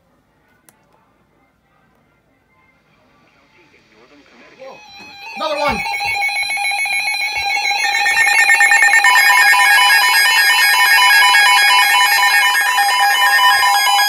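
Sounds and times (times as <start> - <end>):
rapidly alternating higher tones: 4.7 - 14.0
steady electronic alert tone: 4.8 - 14.0.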